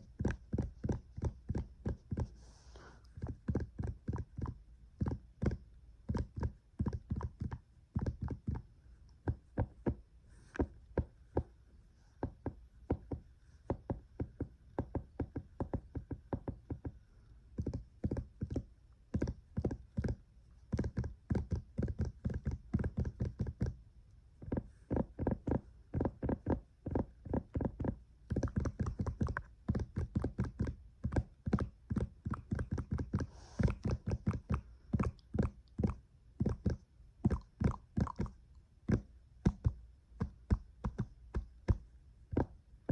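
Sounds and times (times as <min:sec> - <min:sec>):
fast tapping and knocking: 0:00.0 - 0:02.3, 0:12.2 - 0:17.0, 0:17.6 - 0:23.8, 0:24.4 - 0:42.6.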